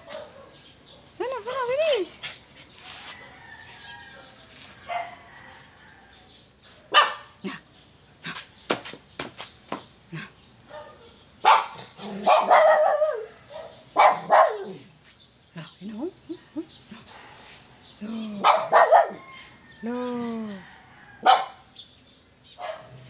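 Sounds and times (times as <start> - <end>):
dog barking and yipping: 0.0 - 0.6, 4.2 - 5.3, 6.9 - 7.3, 10.7 - 14.8, 18.4 - 19.4, 21.2 - 21.6, 22.6 - 23.0.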